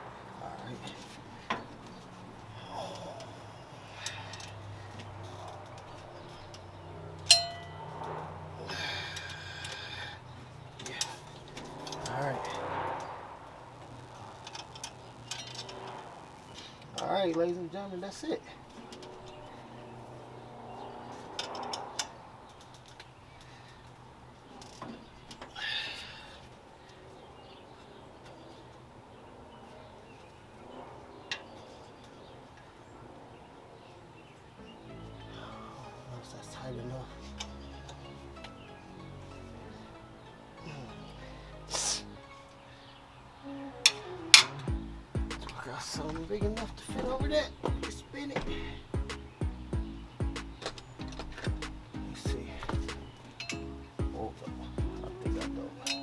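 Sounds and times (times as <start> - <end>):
metallic ringing and rattling: 7.2 - 8.3
metal tool clinking on metal: 7.3 - 8.1
steady low hum: 7.3 - 16.8, 44.2 - 48.1, 48.8 - 55.6.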